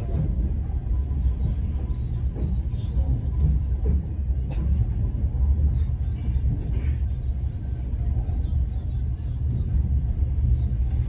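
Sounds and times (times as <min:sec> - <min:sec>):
train running gear rumble: 0:00.0 - 0:11.0.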